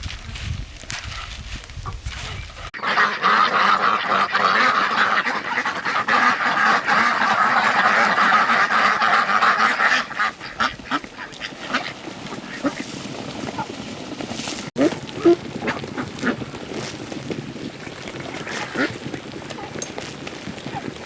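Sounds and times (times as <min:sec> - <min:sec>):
flock of ducks quacking: 0:02.7 - 0:13.8, 0:18.3 - 0:19.0.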